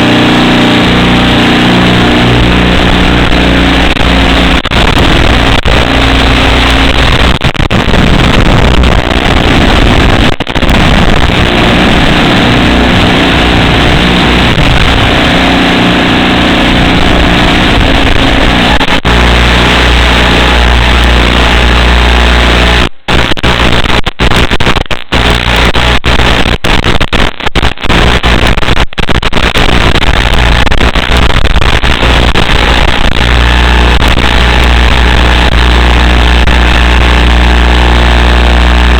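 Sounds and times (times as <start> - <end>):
wind rush on microphone: 0.0 - 20.5
drone propellers buzzing: 0.0 - 22.8.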